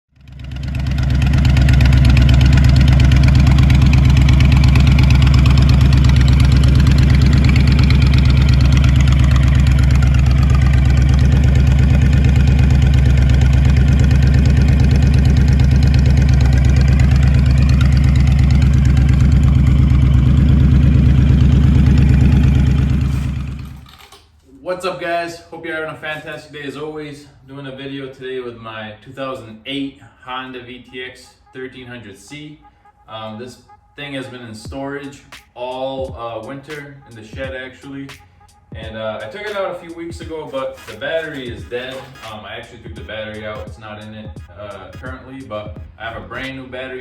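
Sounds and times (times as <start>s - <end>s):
motorcycle engine idling: 0.1s - 23.9s, 38.2s - 46.6s.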